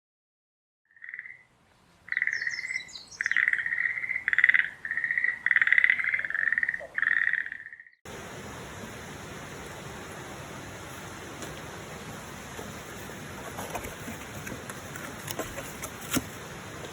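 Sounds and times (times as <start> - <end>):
frog calling in trills: 0.9 - 1.5, 2.1 - 8.0
faint high bird chirps: 2.1 - 8.0.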